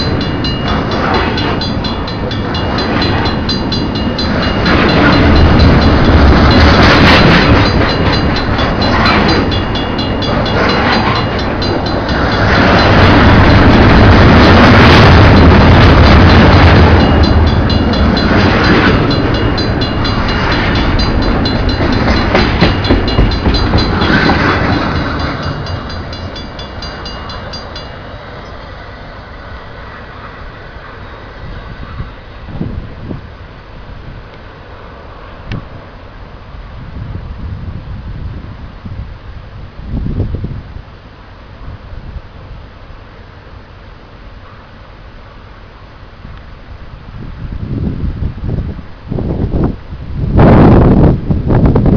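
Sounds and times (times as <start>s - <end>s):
crossing bell ringing: 0.0s - 29.0s
train cars rumbling and clacking: 0.0s - 37.3s.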